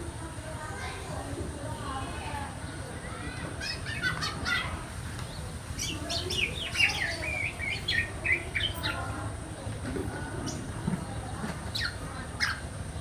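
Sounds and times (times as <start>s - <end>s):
bird chick chirping: 3.5s - 9.1s.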